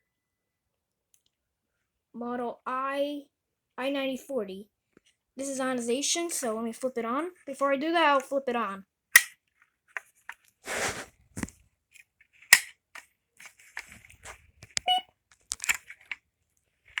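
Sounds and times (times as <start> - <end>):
sharp plastic clicks: 9.2 - 9.4, 12.5 - 12.7, 14.2 - 16.2
rustling from handling: 10.0 - 11.6.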